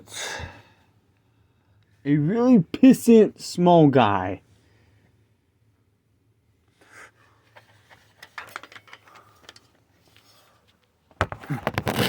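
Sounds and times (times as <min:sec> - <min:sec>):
metal tools rattling: 0:08.2 - 0:09.7.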